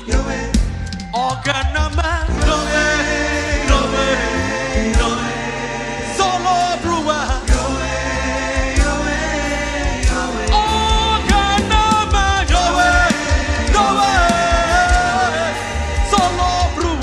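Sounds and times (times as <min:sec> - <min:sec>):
choir singing: 0:00.0 - 0:01.6, 0:02.2 - 0:17.0
band with bass and drums: 0:00.0 - 0:17.0.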